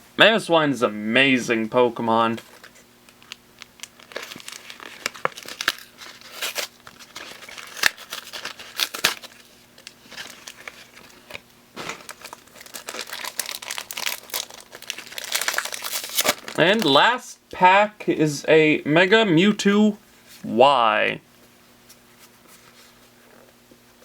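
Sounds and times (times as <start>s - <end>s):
cards clicking and rustling: 2.4s - 16.9s
foil wrapper crinkling: 2.4s - 17.0s.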